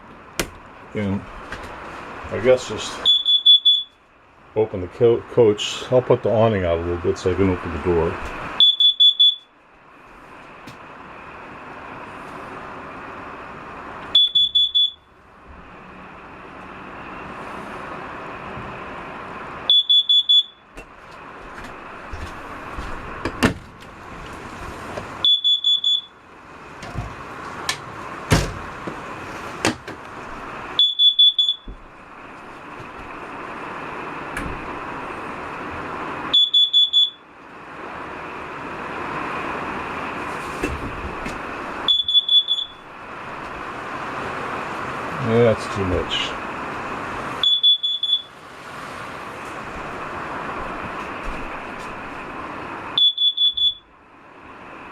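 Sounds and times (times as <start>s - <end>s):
high-pitched alarm beeps: 3.0s - 4.0s, 8.6s - 9.5s, 14.1s - 15.1s, 19.7s - 20.7s, 25.2s - 26.2s, 30.8s - 31.7s, 36.3s - 37.2s, 41.9s - 42.9s, 47.4s - 48.3s, 53.0s - 53.9s.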